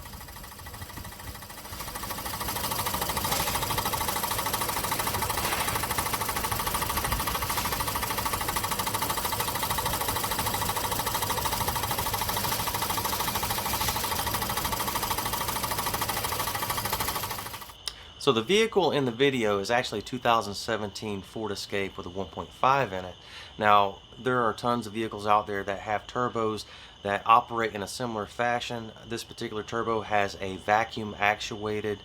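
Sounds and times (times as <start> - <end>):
car engine running: 0.0 - 17.8
rapid knocking from turbocharger: 0.0 - 17.8.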